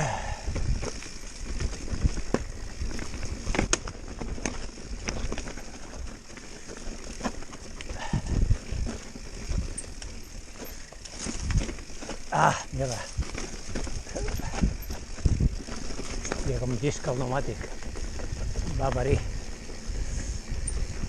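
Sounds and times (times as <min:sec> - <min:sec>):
bike knocking and rattling: 0:00.0 - 0:21.0
bike tyres on stones and dirt: 0:00.0 - 0:21.0
wind on microphone: 0:08.0 - 0:09.8, 0:14.1 - 0:15.8.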